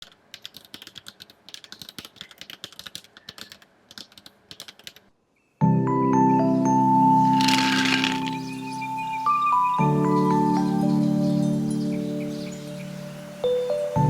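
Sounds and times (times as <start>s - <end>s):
mechanical keyboard typing: 0.0s - 5.1s, 7.4s - 8.4s
music with sustained tones: 8.3s - 14.0s.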